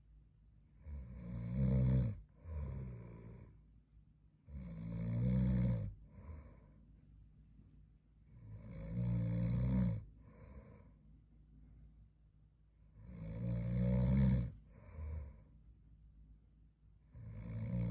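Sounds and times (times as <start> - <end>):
man snoring: 0.8 - 3.5, 4.5 - 6.4, 8.5 - 10.6, 13.0 - 15.3, 17.2 - 17.9.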